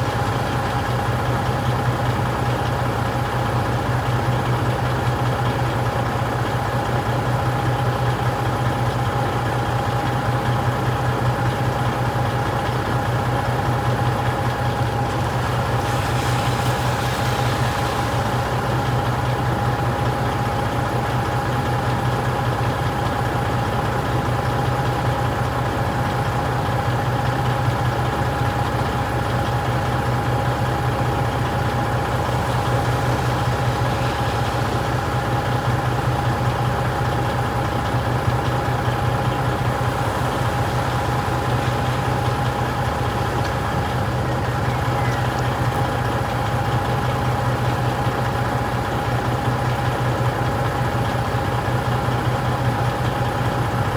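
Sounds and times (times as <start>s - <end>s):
truck engine humming: 0.0s - 53.9s
thin steady whine: 13.0s - 21.6s, 29.2s - 53.9s.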